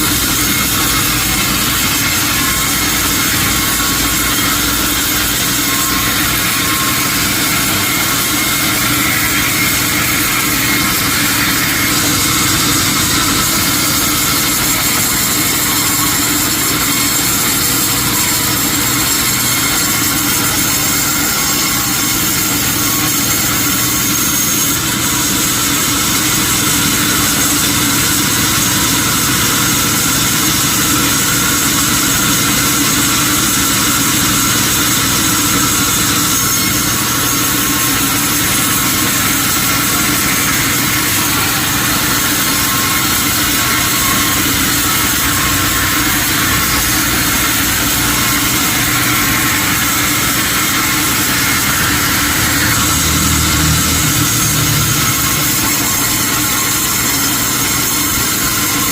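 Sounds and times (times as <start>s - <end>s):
sawmill machinery drone: 0.0s - 58.9s.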